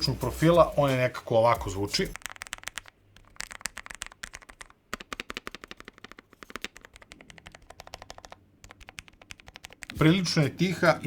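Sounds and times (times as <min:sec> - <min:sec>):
fast typing on mechanical keyboard: 0:01.5 - 0:10.4.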